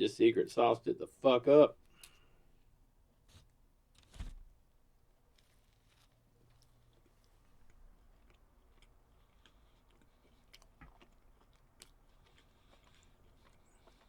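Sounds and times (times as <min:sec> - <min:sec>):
faint chewing: 0:01.8 - 0:02.7, 0:05.0 - 0:14.0.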